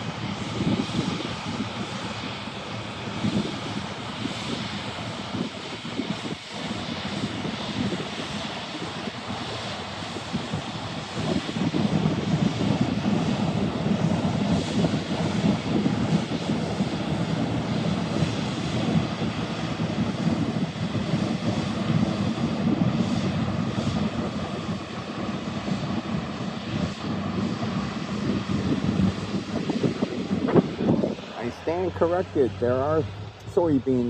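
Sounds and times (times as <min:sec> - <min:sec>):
combine harvester diesel drone: 0:00.0 - 0:34.0.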